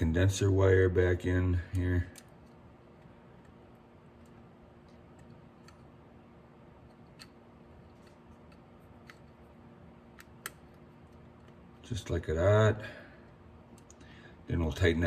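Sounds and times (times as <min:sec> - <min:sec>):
low steady hum: 0:00.0 - 0:15.0
small metallic clicks and taps: 0:04.2 - 0:06.0, 0:06.8 - 0:11.6.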